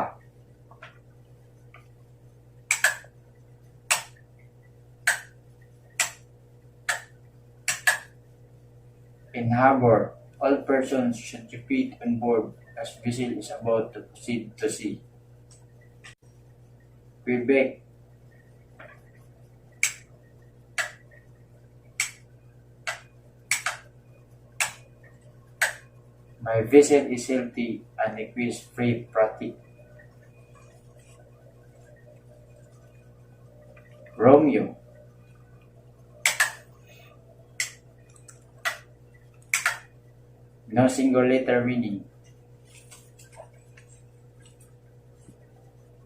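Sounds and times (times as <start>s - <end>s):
faint low hum: 0.0s - 46.0s
sharp clicks: 2.7s - 3.1s, 6.0s - 6.2s, 7.7s - 8.1s, 19.8s - 20.0s, 22.0s - 22.2s, 22.8s - 23.9s, 24.6s - 24.8s, 36.2s - 36.6s, 37.6s - 39.9s.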